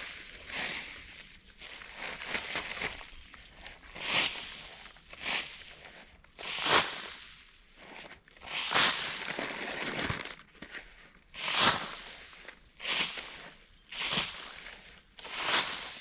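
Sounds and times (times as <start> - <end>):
gritty crunching scrapes: 0.0 - 7.0.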